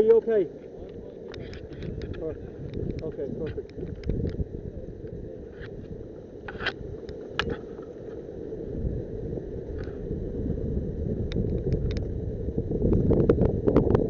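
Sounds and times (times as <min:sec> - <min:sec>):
wind buffeting microphone: 0:00.0 - 0:14.0
sharp clicks and snaps: 0:00.8 - 0:04.4, 0:11.2 - 0:12.1.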